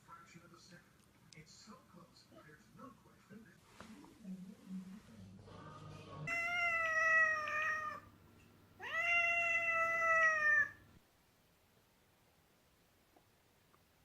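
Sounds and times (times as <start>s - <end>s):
cat meowing: 6.3s - 8.1s, 8.8s - 10.9s.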